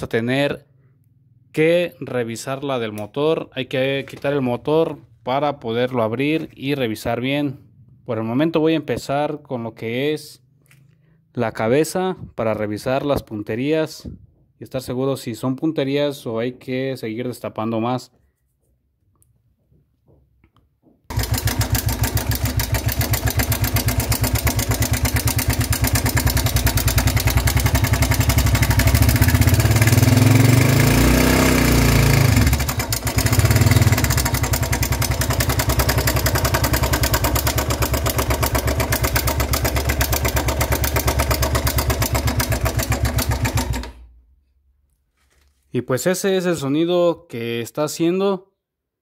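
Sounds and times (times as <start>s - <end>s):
motorcycle engine clattering: 21.1s - 44.1s.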